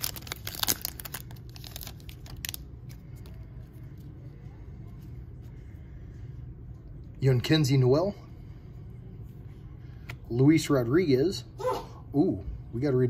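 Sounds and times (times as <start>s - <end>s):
foil wrapper crinkling: 0.0s - 3.4s
faint low hum: 0.0s - 13.0s.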